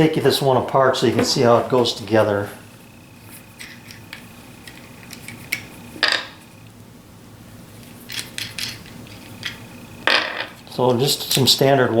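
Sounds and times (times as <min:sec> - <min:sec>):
bolts and washers clinking: 0:07.8 - 0:11.7.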